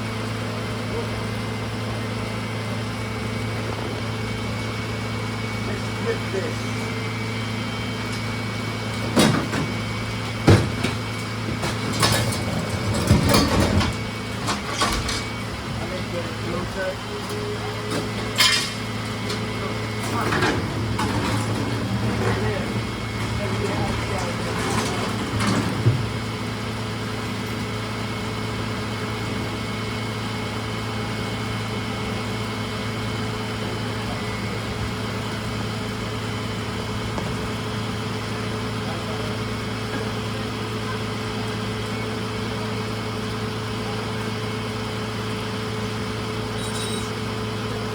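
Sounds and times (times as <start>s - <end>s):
garbage truck engine idling: 0.0s - 47.9s
metal clanks and bangs: 8.9s - 15.9s, 17.8s - 26.6s.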